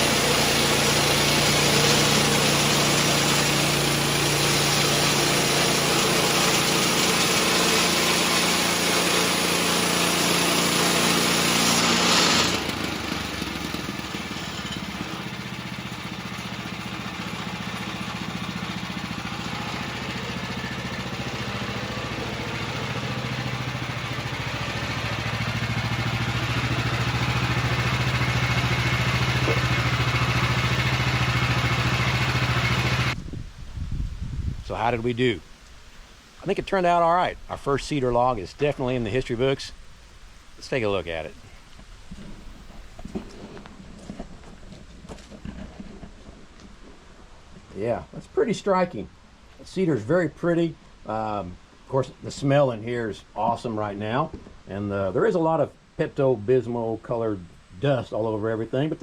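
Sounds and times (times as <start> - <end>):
saw blade hissing through log: 0.0 - 13.2
gas engine running: 0.0 - 33.2.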